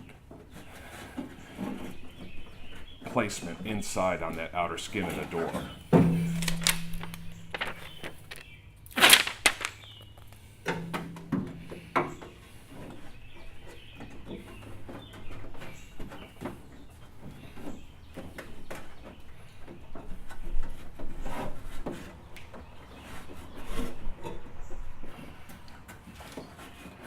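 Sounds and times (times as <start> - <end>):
knocks against metal: 5.9 - 8.3, 10.7 - 12.2.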